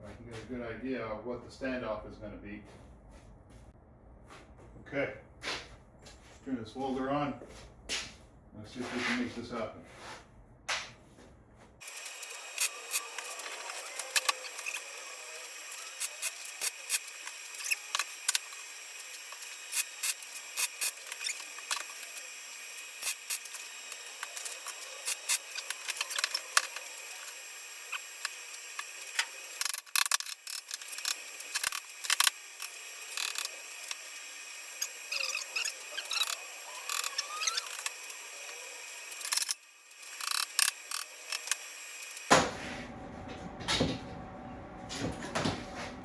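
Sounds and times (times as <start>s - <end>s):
welding arc crackling: 11.8s - 42.3s.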